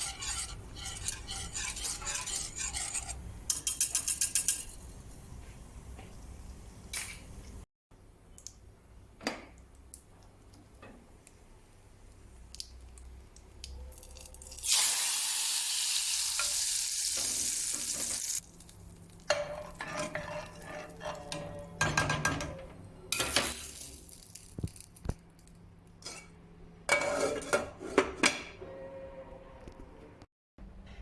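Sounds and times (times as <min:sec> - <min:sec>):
spoon scraping a pot: 0:00.0 - 0:05.1, 0:19.3 - 0:21.8, 0:26.9 - 0:28.2
loud hiss from pot: 0:14.7 - 0:18.4.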